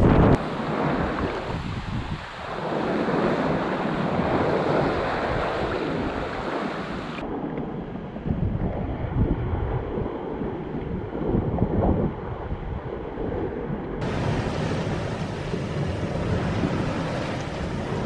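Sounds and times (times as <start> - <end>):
seawater rushing along hull: 0.0 - 18.0
wind buffeting microphone: 0.0 - 18.0.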